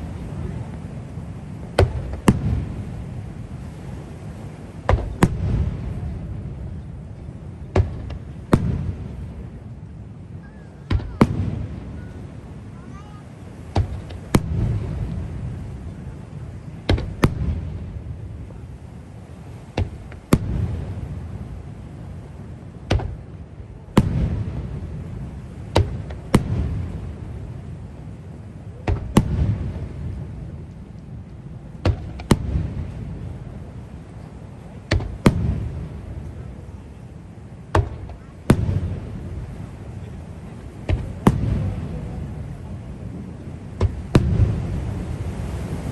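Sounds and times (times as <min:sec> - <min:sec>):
low rolling echo rumble: 0:00.0 - 0:45.9.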